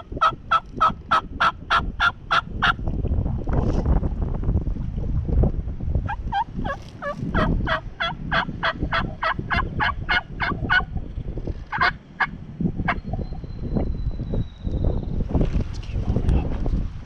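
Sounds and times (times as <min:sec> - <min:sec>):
low rumble: 0:02.8 - 0:11.5
turkey yelping: 0:06.1 - 0:10.9, 0:11.7 - 0:12.3.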